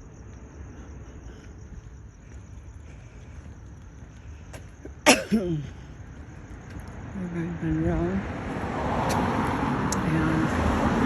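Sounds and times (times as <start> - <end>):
faint outdoor rumble: 0.0 - 11.0.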